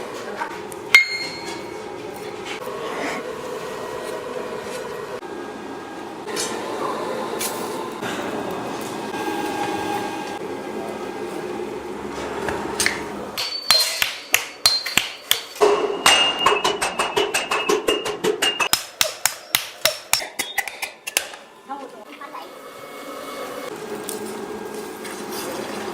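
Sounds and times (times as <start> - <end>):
hammer blows on bronze: 1.0 - 1.7.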